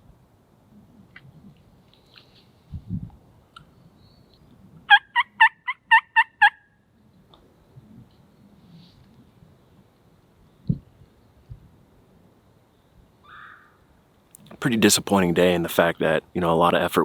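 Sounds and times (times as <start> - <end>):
wild turkey yelps: 4.9 - 6.6, 13.2 - 13.8.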